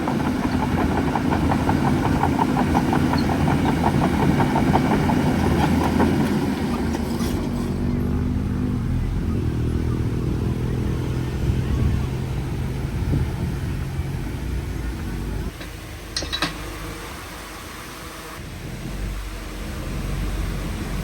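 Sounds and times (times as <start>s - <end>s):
heavy diesel engine running: 0.0s - 21.0s.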